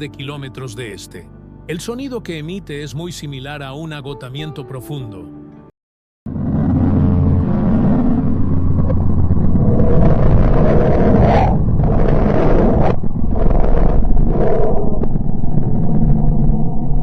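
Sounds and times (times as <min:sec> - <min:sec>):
deep rumbling roar: 0:06.3 - 0:17.0.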